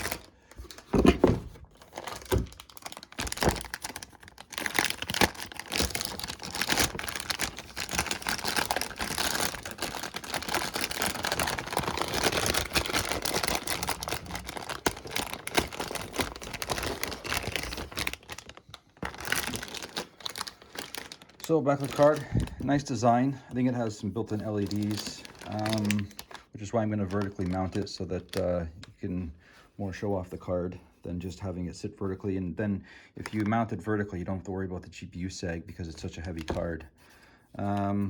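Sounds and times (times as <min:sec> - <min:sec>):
packaging crinkling and rustling: 0:00.0 - 0:28.5, 0:36.2 - 0:36.8.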